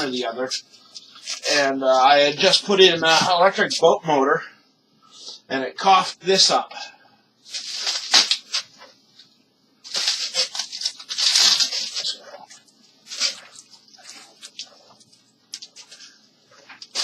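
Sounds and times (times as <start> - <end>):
packaging rustling and crinkling: 7.5 - 8.7, 9.9 - 17.0.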